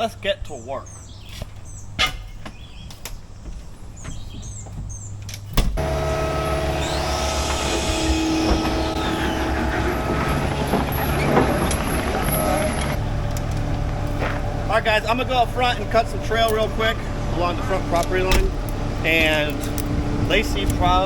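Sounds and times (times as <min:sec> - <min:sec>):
engine whine: 0:05.6 - 0:21.0
vehicle engine running: 0:05.8 - 0:21.0
engine clicks: 0:10.7 - 0:14.5, 0:15.7 - 0:16.9, 0:17.8 - 0:21.0.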